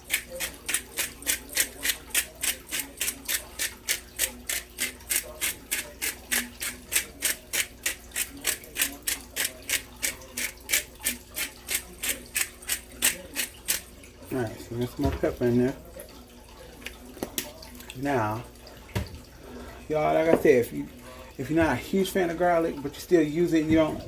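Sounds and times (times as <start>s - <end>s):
pepper grinder grinding: 0.0s - 13.9s.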